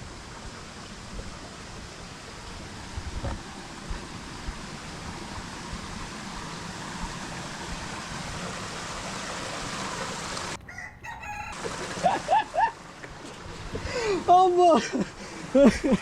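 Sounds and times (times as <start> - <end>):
mountain stream rushing: 0.0 - 10.6, 11.3 - 16.0.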